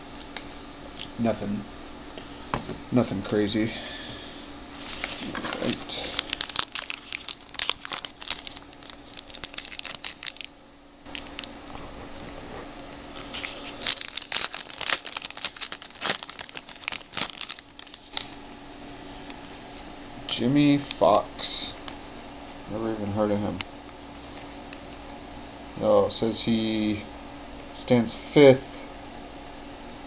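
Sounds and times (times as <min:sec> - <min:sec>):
plastic wrapper crinkling and tearing: 0:04.7 - 0:10.5, 0:11.1 - 0:12.2, 0:13.2 - 0:18.4, 0:23.9 - 0:25.1.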